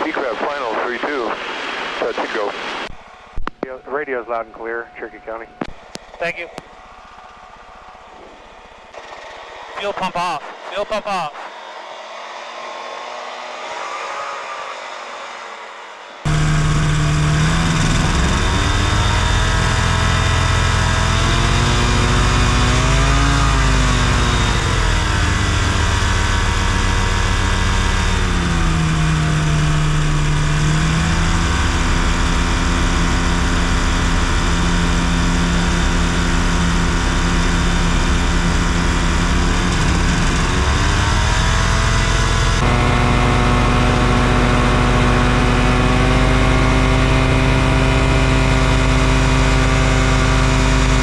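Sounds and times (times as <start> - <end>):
steady rush of noise: 0.0 - 6.6
ultralight aircraft engine running: 16.3 - 51.0.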